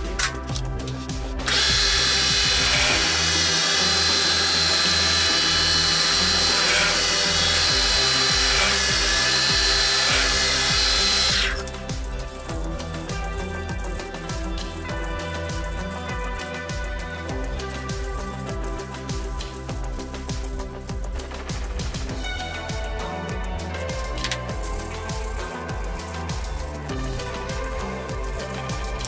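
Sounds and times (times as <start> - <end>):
background music: 0.0 - 29.0
power tool high whine: 1.4 - 11.8.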